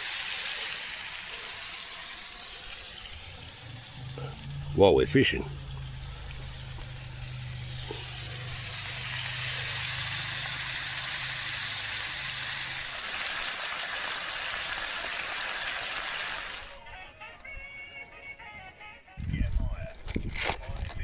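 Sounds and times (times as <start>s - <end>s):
burger patties sizzling: 0.0s - 16.8s
low hum: 1.3s - 12.9s.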